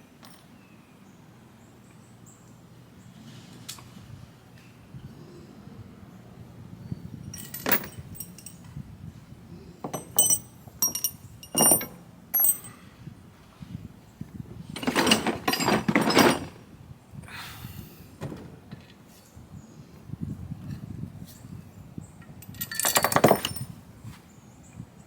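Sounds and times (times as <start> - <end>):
metal parts clinking: 0.2 - 0.5, 7.2 - 8.7, 9.8 - 12.8, 14.7 - 16.6, 22.4 - 23.8
metal parts clattering and scraping: 7.2 - 8.7, 9.8 - 12.8, 14.6 - 16.6, 22.4 - 23.7.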